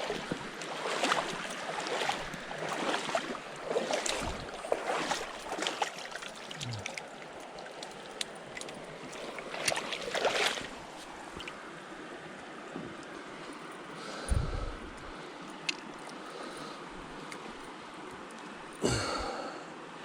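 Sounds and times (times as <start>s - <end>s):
water splashing: 0.0s - 11.6s
mountain stream rushing: 0.0s - 20.0s.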